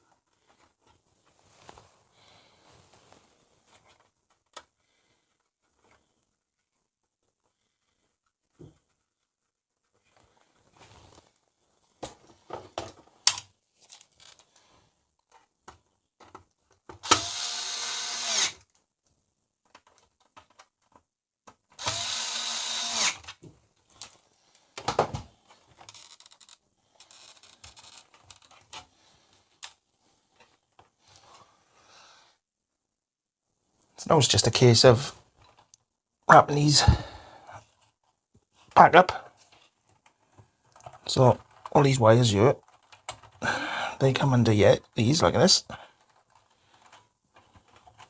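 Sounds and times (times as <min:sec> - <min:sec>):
electric screwdriver running: 0:17.0 - 0:18.6, 0:21.8 - 0:23.3.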